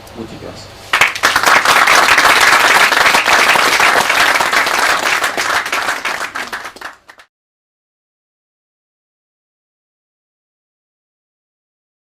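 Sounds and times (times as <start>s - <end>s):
audience applauding: 0.9s - 7.3s.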